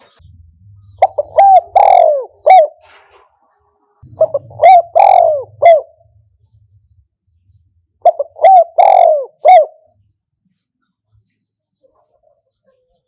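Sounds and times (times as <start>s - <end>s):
dove cooing: 0.9s - 3.0s, 4.0s - 6.0s, 8.0s - 10.0s.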